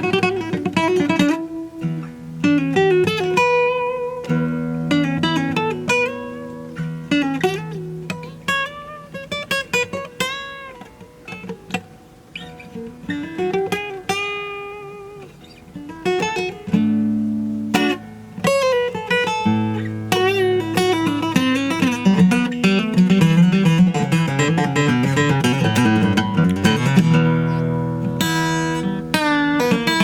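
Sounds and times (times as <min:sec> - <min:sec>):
fingerstyle acoustic guitar: 0:00.0 - 0:30.0.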